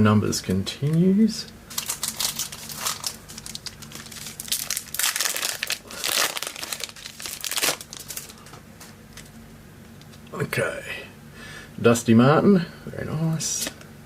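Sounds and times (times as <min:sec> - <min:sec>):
card pack wrapper crinkling: 0:01.7 - 0:09.4.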